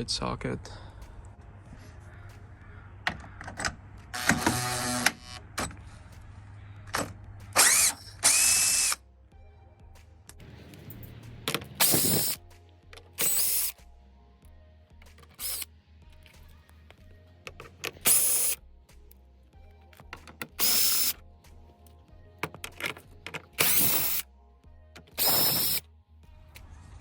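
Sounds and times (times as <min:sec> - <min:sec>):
power ratchet whirring: 0:04.2 - 0:05.4, 0:07.5 - 0:09.0, 0:11.7 - 0:12.4, 0:13.0 - 0:13.8, 0:15.2 - 0:15.7, 0:17.5 - 0:18.6, 0:20.2 - 0:21.2, 0:22.5 - 0:24.2, 0:25.0 - 0:25.8
socket and bolts clicking: 0:16.9 - 0:18.6, 0:20.0 - 0:21.1, 0:22.4 - 0:24.2.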